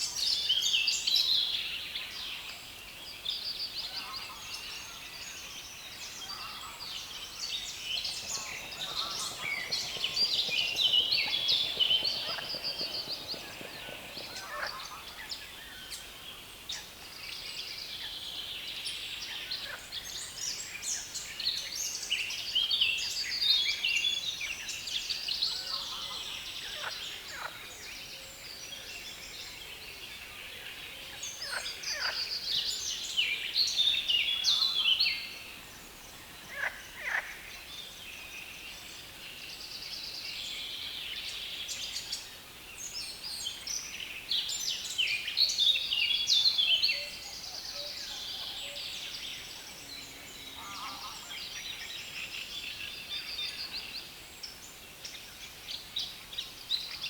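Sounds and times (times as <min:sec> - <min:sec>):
birds singing: 0:05.8 - 0:16.8.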